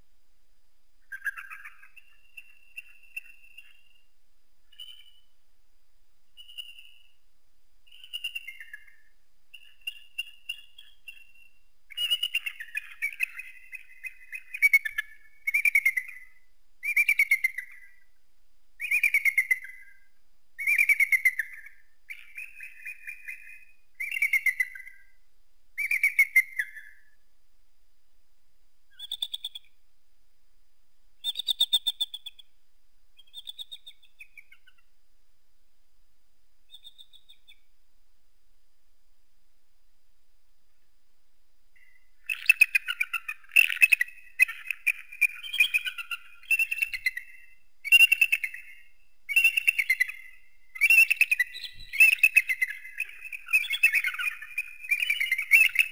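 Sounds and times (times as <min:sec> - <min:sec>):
eagle chittering calls: 0:01.1 - 0:03.9, 0:33.2 - 0:34.9, 0:36.7 - 0:37.6, 0:42.2 - 0:55.9.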